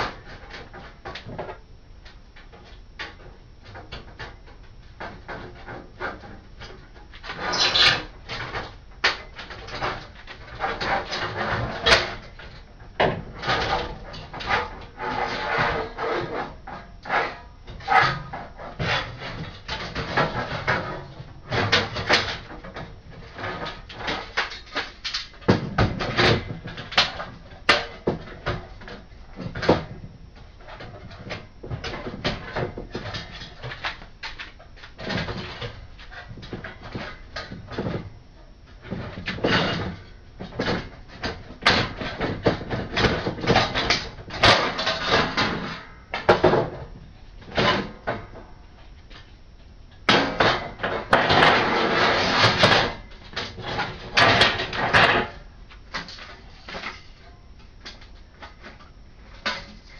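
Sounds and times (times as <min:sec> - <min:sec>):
sheet metal clanks and scrapes: 0:02.5 - 0:38.1, 0:38.8 - 0:48.6, 0:50.1 - 0:59.9.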